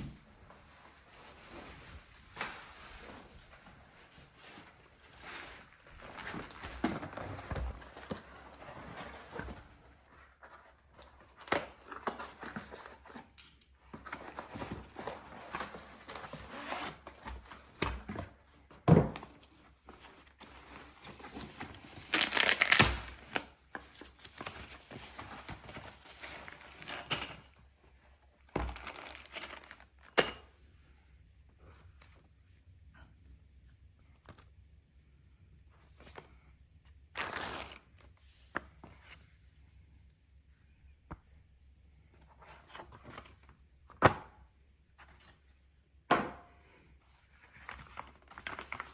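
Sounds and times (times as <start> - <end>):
packaging crinkling and tearing: 21.8 - 23.6, 28.7 - 29.8.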